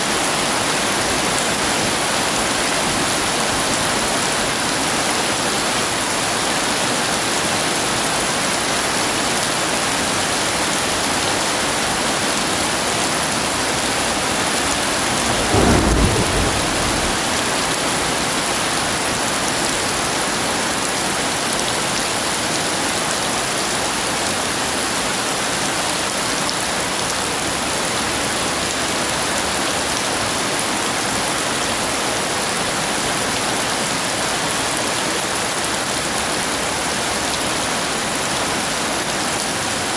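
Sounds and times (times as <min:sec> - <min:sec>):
heavy rain hissing: 0:13.2 - 0:18.8
thunder clap rumbling: 0:13.8 - 0:18.8.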